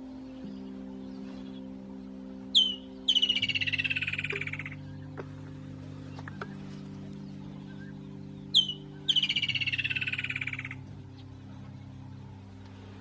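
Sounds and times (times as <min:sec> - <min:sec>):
steady low drone: 0:00.0 - 0:13.0
animal chirp: 0:02.5 - 0:04.8, 0:08.5 - 0:10.8.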